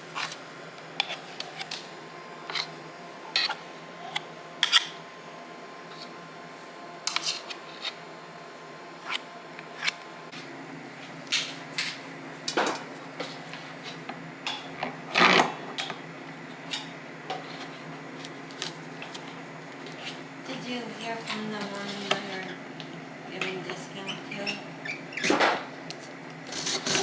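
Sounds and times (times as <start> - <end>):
utensils clattering: 26.5 - 27.0.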